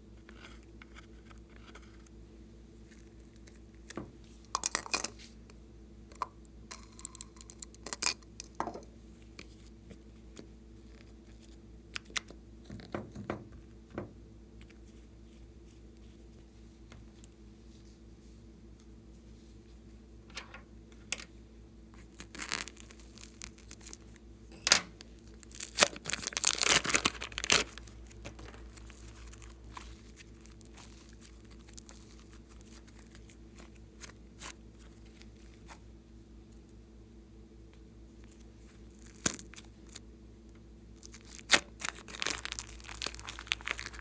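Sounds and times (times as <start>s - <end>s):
slime crackling and popping: 22.0s - 24.2s, 25.0s - 35.5s, 38.9s - 40.0s, 41.0s - 44.0s.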